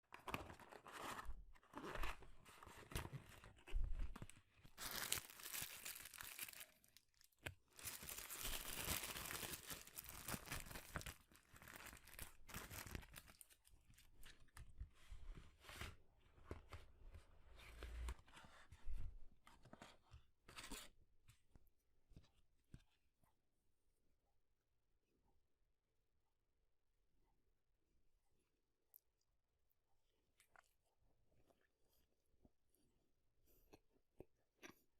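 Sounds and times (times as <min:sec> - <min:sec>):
paper wrappers rustling and crinkling: 0:00.1 - 0:14.5.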